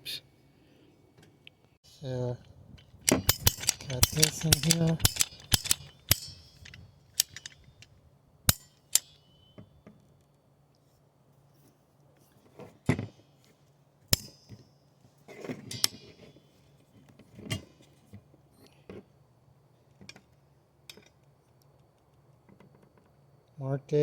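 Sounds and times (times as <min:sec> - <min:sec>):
metallic clinks and knocks: 0:02.8 - 0:09.6, 0:15.6 - 0:16.3.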